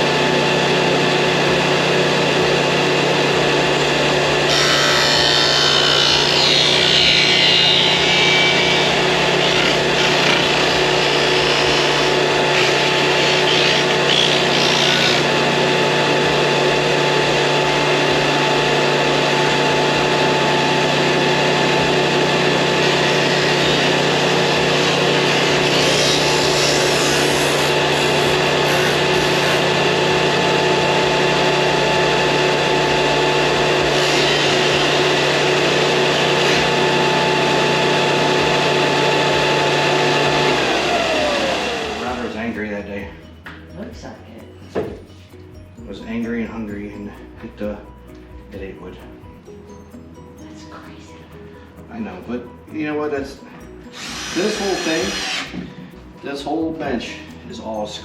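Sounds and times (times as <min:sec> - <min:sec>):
power tool motor whining: 0:00.0 - 0:43.1, 0:53.8 - 0:56.0.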